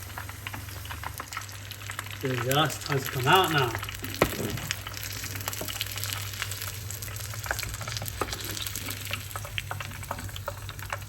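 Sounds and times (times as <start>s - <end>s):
crackles and pops of frying: 0.0s - 11.0s
onion ring sizzling in hot oil: 0.0s - 11.0s.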